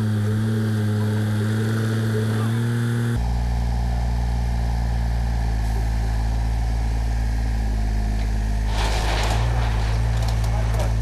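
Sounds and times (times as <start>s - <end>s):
large engine running: 0.0s - 11.0s
burst of rough noise: 8.7s - 11.0s.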